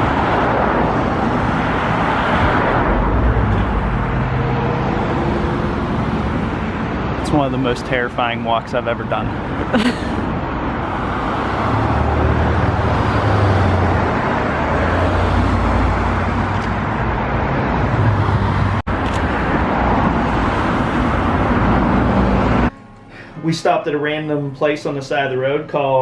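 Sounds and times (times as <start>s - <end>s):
road traffic passing close by: 0.0s - 24.4s.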